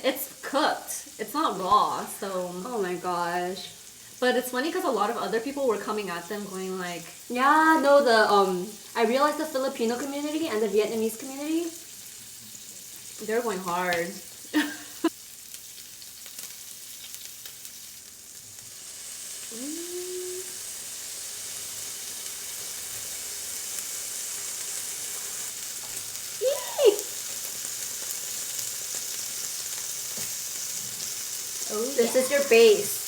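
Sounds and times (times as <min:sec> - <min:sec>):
meat sizzling on a grill pan: 0:00.0 - 0:33.0
voiced murmur: 0:31.7 - 0:33.0.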